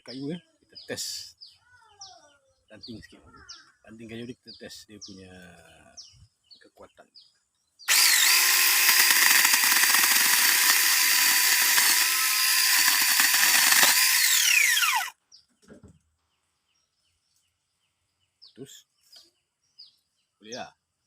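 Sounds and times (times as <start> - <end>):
electric chainsaw cutting wood: 7.9 - 15.2.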